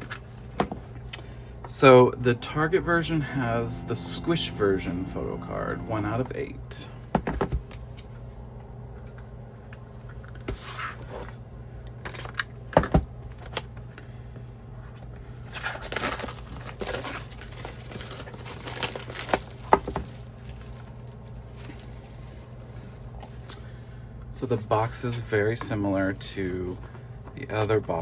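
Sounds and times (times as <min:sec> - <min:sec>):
packaging crinkling and tearing: 0:12.0 - 0:13.8, 0:15.3 - 0:23.6.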